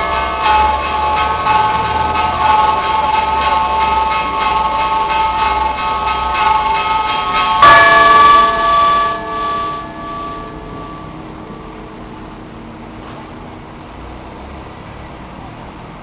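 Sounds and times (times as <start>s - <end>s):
quick strikes on small bells: 0.0s - 12.1s
church bells ringing: 0.0s - 12.9s
loud deep bell stroke: 0.0s - 13.3s.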